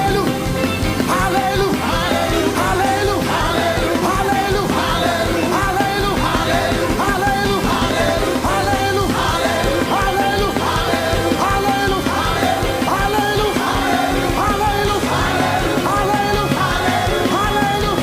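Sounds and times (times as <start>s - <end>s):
live band playing upbeat song: 0.0s - 18.0s
voices singing along: 0.0s - 18.0s.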